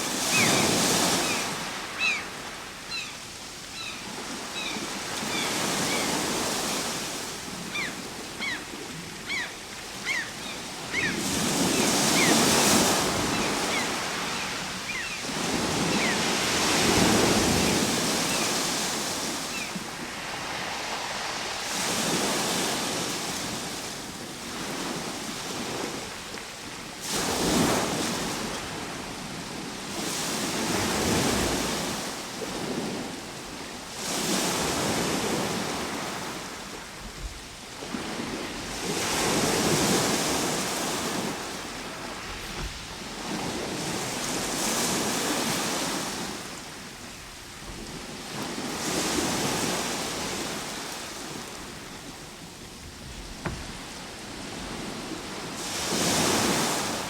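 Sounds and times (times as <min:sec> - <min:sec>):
ocean waves breaking: 0:00.0 - 0:26.2, 0:27.0 - 0:57.0.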